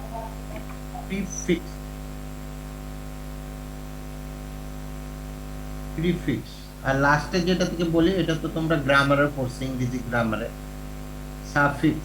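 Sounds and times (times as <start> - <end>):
person speaking: 0.0 - 1.8, 6.0 - 10.6
electrical mains hum: 0.0 - 12.0.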